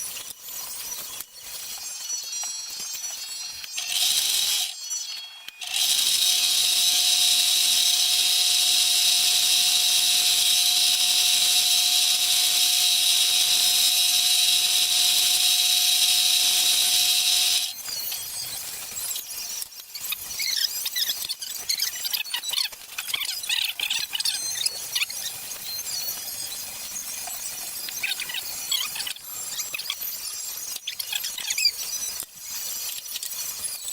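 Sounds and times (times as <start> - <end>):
small power tool whining: 2.7 - 17.9.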